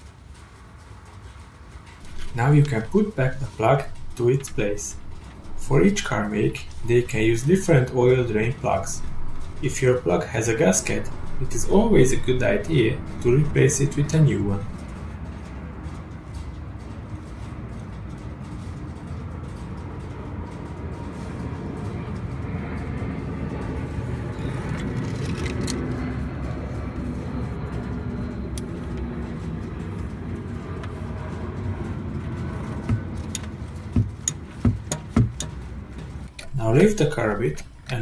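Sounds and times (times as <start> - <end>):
road traffic rumble: 1.1 - 38.0
vehicle passing: 2.0 - 15.2.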